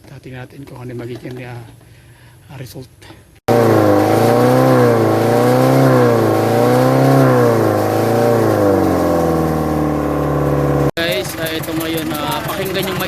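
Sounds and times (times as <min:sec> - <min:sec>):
diesel engine revving: 0:03.5 - 0:13.0.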